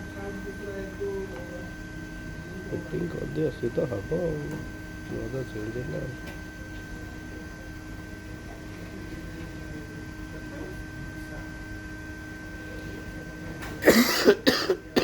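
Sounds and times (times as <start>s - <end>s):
faint high whine: 0.0s - 15.0s
low electrical hum: 0.0s - 15.0s
person coughing: 13.8s - 15.0s.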